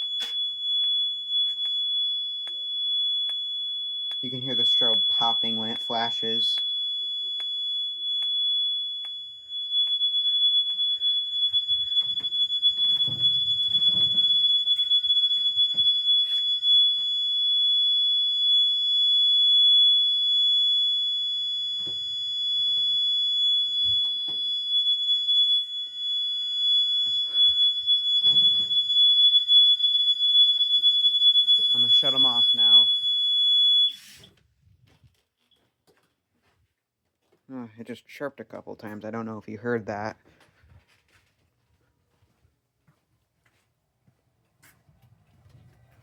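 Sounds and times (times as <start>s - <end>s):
fire alarm horn tone: 0.0s - 34.2s.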